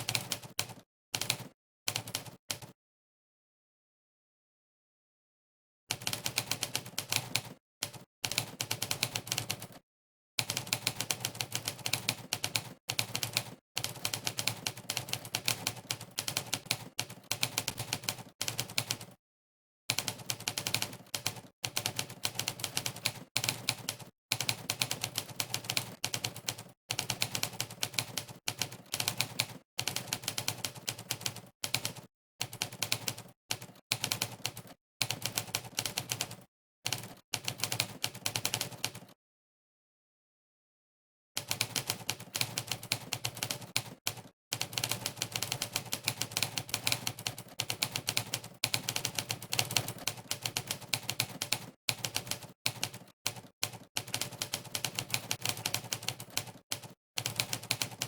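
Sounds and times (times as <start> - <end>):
typewriter keystroke clacks: 41.4 - 58.0.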